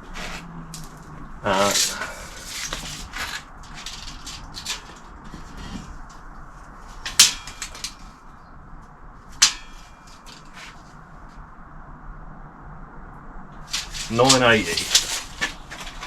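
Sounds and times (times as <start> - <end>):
sharp metallic clacks: 7.0 - 8.2, 9.4 - 10.8, 13.6 - 16.0.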